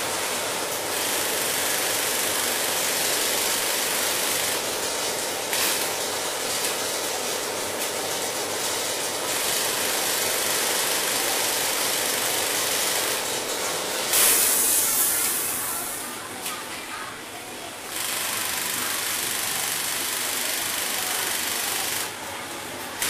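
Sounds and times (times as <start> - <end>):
sewing machine running: 0.0 - 16.4, 17.6 - 23.0
loud burst of hiss: 14.0 - 16.2.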